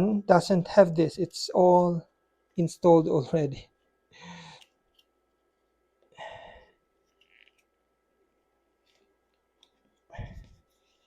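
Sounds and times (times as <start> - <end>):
breathy exhale: 6.2 - 6.8.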